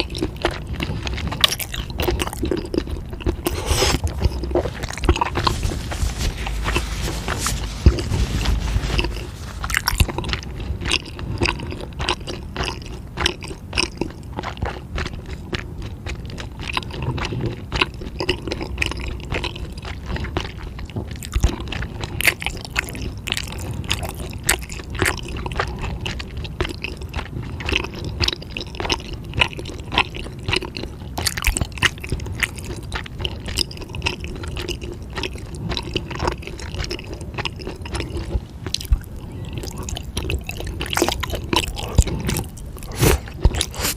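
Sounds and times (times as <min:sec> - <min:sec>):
person chewing: 0:00.0 - 0:43.9.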